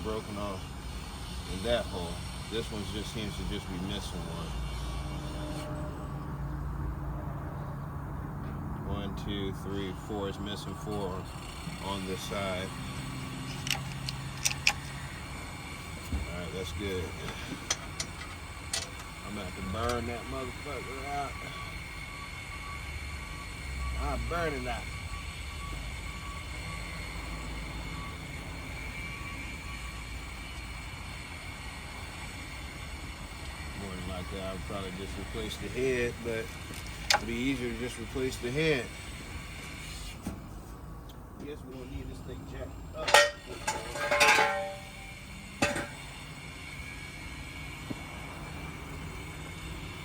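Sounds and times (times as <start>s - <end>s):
metal tools clanking: 43.0s - 46.1s.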